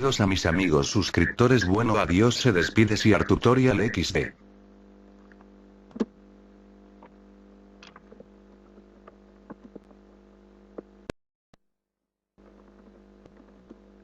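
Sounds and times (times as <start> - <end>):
electrical hum: 0.0 - 11.1.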